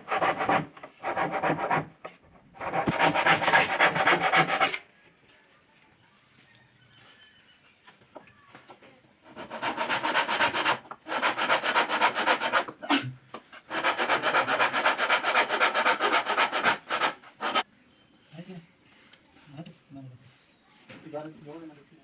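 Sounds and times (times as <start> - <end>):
wood being sanded by hand: 0.1 - 1.9, 2.6 - 4.8, 9.3 - 12.8, 13.6 - 17.6.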